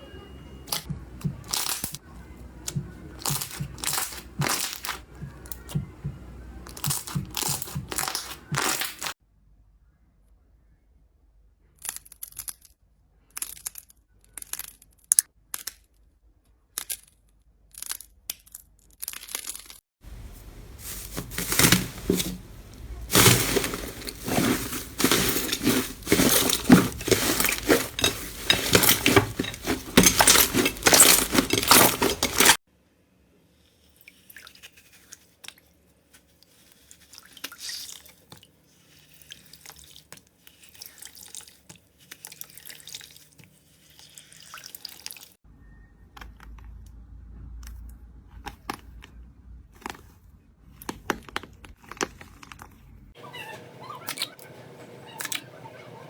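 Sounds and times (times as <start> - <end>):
slime squishing: 2.6 - 5.8, 6.6 - 9.2, 20.1 - 32.6
slime crackling and crunching: 2.7 - 5.0, 6.7 - 9.2.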